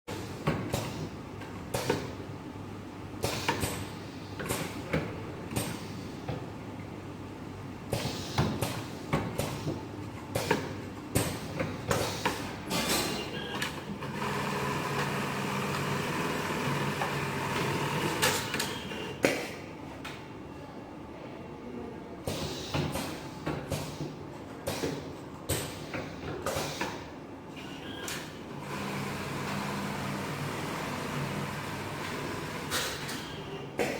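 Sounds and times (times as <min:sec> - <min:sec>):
steady machine hum: 0:27.1 - 0:32.7.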